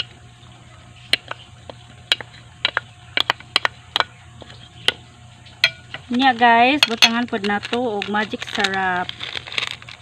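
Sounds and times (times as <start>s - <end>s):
low steady hum: 0.0s - 10.0s.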